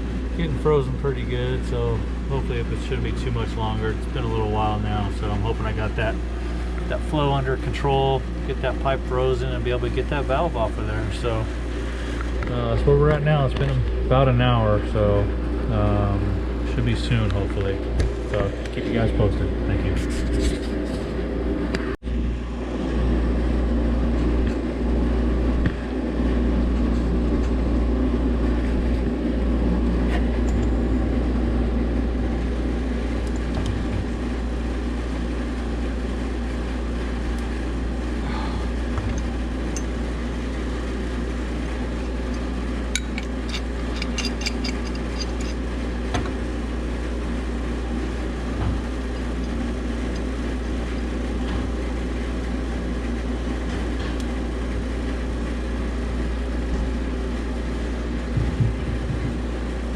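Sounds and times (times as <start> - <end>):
machinery hum: 0.0 - 59.9
light metallic clicks and clinks: 43.0 - 45.6.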